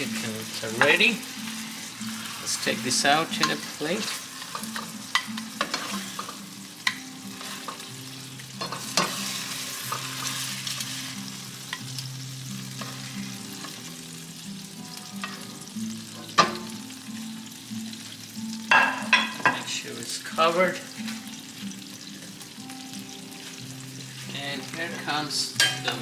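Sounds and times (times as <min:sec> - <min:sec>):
utensil scraping a pan: 0:00.0 - 0:11.8
meat sizzling in a frying pan: 0:00.0 - 0:26.0.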